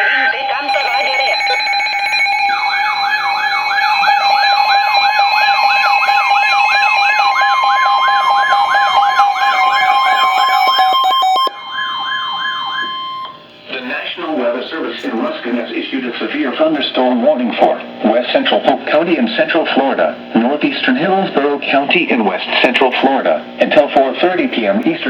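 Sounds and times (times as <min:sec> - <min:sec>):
siren tone sweeping down: 0:00.0 - 0:13.4
steady alarm tones: 0:00.0 - 0:15.6
steady warning alarm tone: 0:00.0 - 0:15.6.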